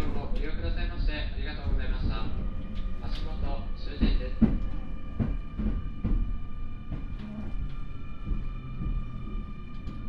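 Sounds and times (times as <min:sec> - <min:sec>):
electrical equipment high hum: 0:00.0 - 0:10.0
low uneven rumble: 0:00.0 - 0:10.0.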